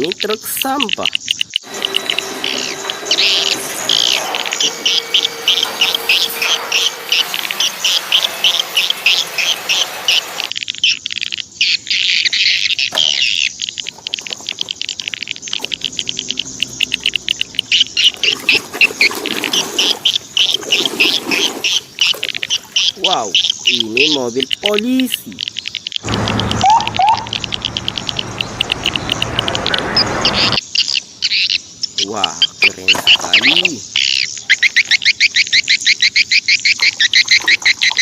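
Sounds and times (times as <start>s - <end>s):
insects chirping: 0.0s - 38.0s
short rising chirps: 1.6s - 10.5s, 26.0s - 30.6s
water splashing: 1.6s - 10.8s, 12.1s - 30.6s.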